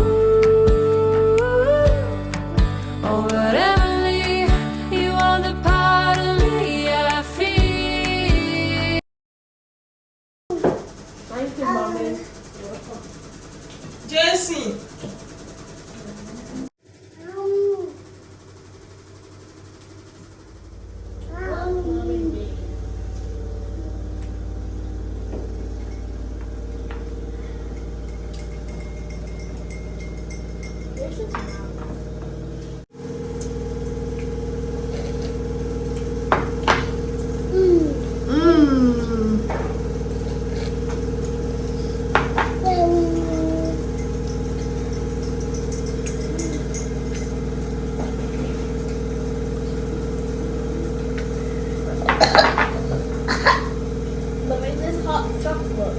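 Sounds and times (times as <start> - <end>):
low mechanical hum: 0.0 - 9.0, 10.5 - 55.9
faint light clinks: 25.6 - 32.4, 43.1 - 48.3.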